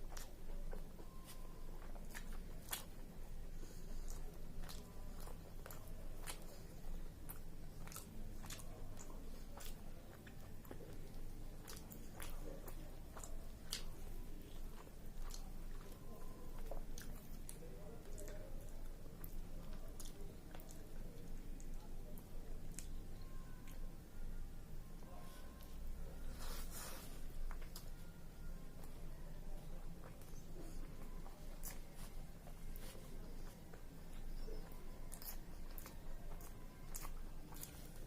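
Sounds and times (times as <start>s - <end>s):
person chewing: 0.0s - 23.8s, 25.1s - 29.0s, 29.6s - 38.0s
mouth clicks and crunches: 4.1s - 21.8s, 29.8s - 38.0s.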